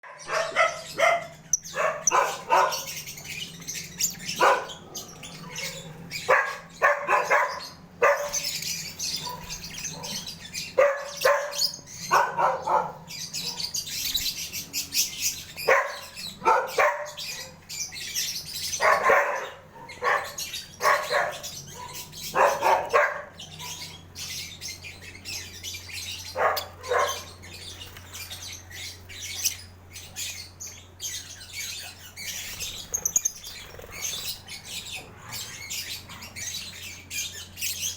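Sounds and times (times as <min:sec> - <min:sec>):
dog barking: 0:00.0 - 0:03.0, 0:04.4 - 0:04.8, 0:05.5 - 0:08.5, 0:09.2 - 0:13.8, 0:15.6 - 0:17.6, 0:18.7 - 0:23.9, 0:26.3 - 0:27.4
lovebirds chirping: 0:00.0 - 0:37.9.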